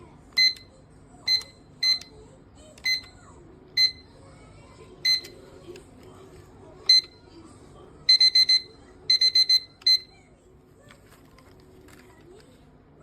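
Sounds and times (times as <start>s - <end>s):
kitchen timer beeping: 0.3s - 2.2s, 2.8s - 4.1s, 5.0s - 5.4s, 6.8s - 7.2s, 8.0s - 10.2s
button key-press beeps: 0.4s - 0.7s, 1.3s - 2.1s, 2.8s - 3.2s, 6.9s - 7.1s, 8.1s - 10.1s.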